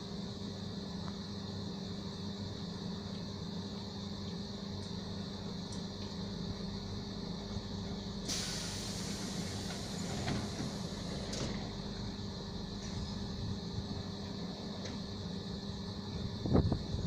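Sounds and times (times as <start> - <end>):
electric train humming: 4.7 - 17.0
compressed air hiss: 8.2 - 11.5.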